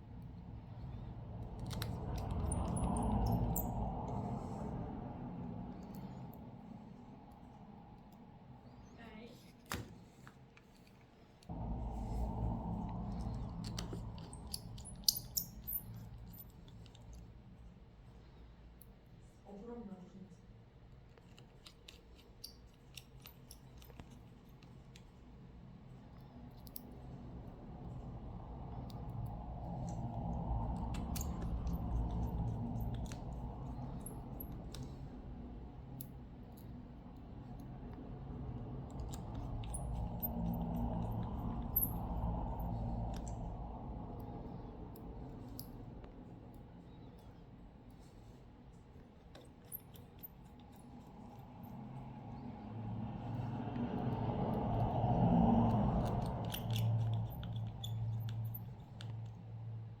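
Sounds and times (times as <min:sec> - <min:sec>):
steady low hum: 0:11.4 - 0:21.0, 0:23.0 - 1:00.0
small tool clicks and scraping: 0:21.1 - 0:25.1, 0:49.2 - 0:51.6, 0:55.7 - 0:59.6
small tools clicking: 0:56.0 - 0:59.4.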